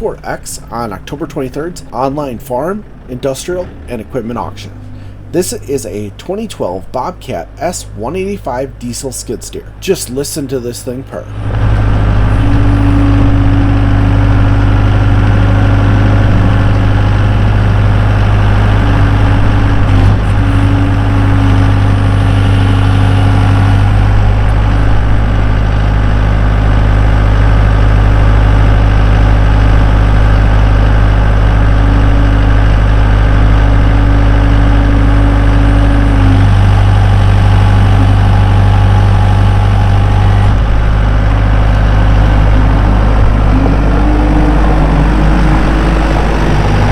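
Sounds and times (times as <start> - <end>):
diesel engine running: 0.0 - 46.9
high steady tone: 11.0 - 25.6, 31.0 - 46.9.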